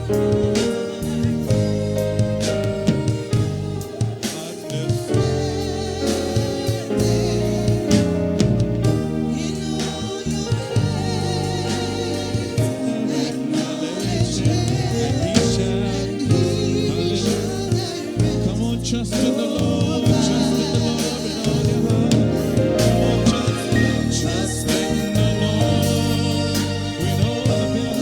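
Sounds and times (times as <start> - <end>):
keyboard and bass accompaniment: 0.0 - 28.0
voices singing with vibrato: 0.0 - 28.0.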